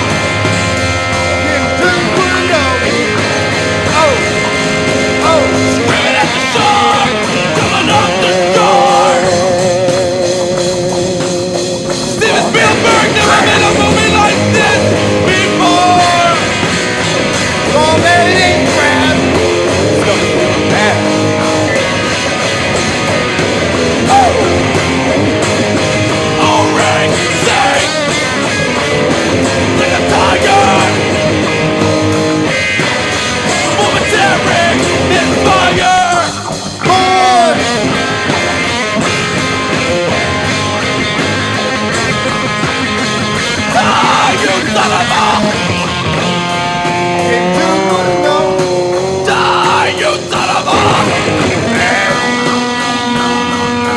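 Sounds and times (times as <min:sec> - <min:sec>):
electric guitar: 0:00.0 - 0:53.9
punk rock music: 0:00.0 - 0:53.9
singing: 0:05.2 - 0:10.2, 0:12.0 - 0:16.8, 0:17.6 - 0:22.2, 0:26.1 - 0:31.6, 0:32.4 - 0:38.1, 0:43.4 - 0:46.3, 0:47.2 - 0:53.9.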